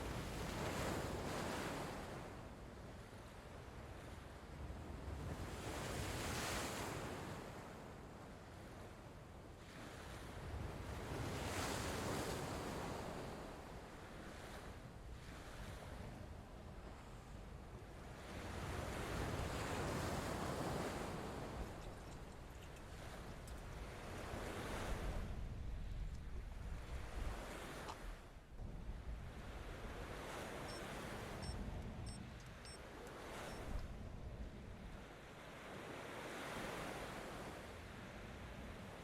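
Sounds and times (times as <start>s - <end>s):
sea waves washing on shore: 9.6s - 39.0s
wind on microphone: 18.2s - 35.1s.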